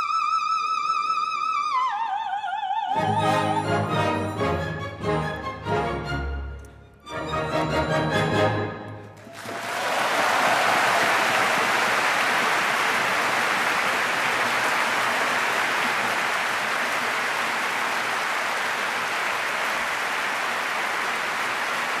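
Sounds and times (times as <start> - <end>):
audience applauding: 8.9 - 22.0.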